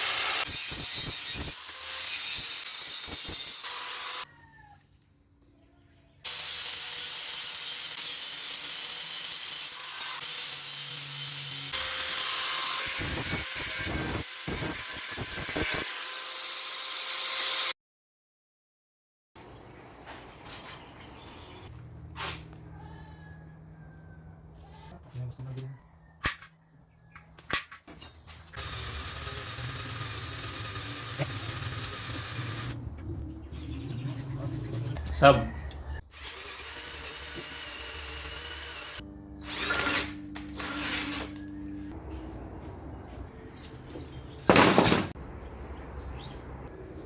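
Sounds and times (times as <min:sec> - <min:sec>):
power tool grinding steel: 0:00.0 - 0:04.3, 0:06.3 - 0:17.7, 0:28.5 - 0:32.8.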